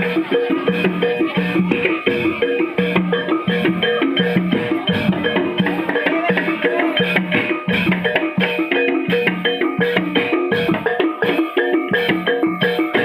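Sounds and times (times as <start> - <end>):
bronze metallophones playing: 0.0 - 13.0
drums: 0.0 - 13.0.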